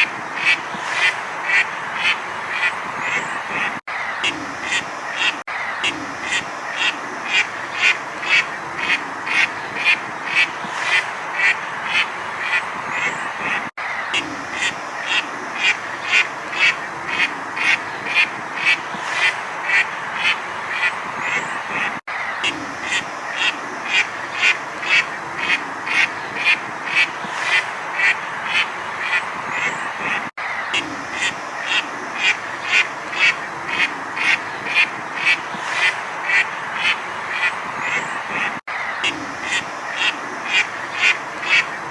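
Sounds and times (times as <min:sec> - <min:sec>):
duck quacking: 0:00.0 - 0:41.9.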